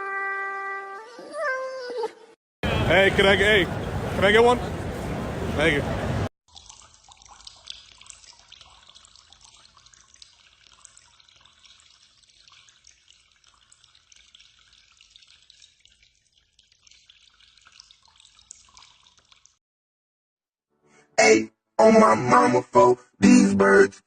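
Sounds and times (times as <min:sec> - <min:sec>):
faint trickling water: 0:06.5 - 0:19.6
small water drips: 0:06.5 - 0:19.6.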